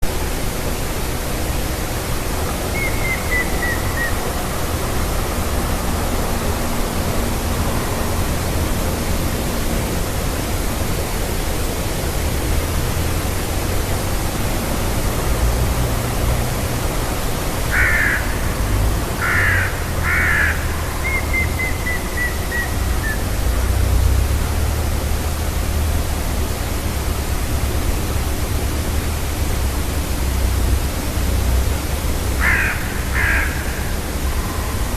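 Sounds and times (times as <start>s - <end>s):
woodpecker song: 2.7s - 4.3s, 19.2s - 23.3s.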